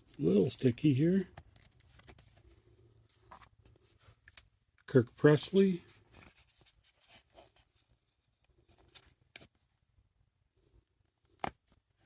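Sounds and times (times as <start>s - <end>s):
trading cards rustling: 0.0s - 7.8s.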